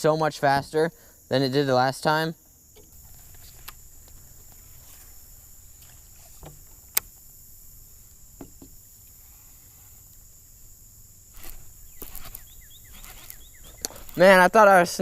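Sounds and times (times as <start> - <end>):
faint high-pitched hiss: 0.0 - 15.0
gear clicking against kayak: 11.3 - 14.6.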